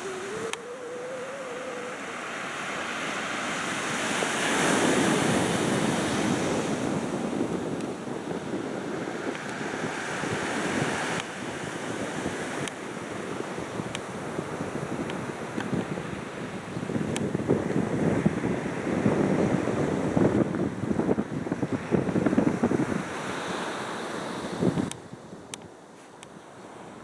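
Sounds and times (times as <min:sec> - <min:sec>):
faint wavering tone: 0:00.0 - 0:04.0
wind buffeting microphone: 0:00.0 - 0:23.6, 0:24.2 - 0:25.6
sea waves washing ashore: 0:00.0 - 0:27.0.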